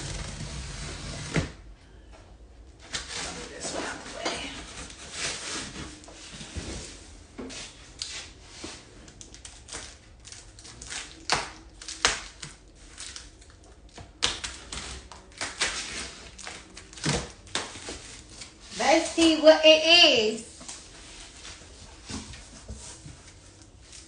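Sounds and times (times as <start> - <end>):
wrapping paper rustling and tearing: 2.9 - 6.1, 8.8 - 24.0
sharp crackles and snaps: 9.2 - 15.8.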